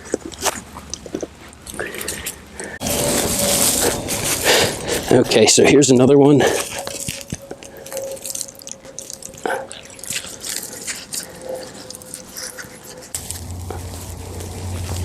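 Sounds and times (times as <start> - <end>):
faint steady hum: 6.4 - 15.0
hands digging in soil: 6.5 - 15.0.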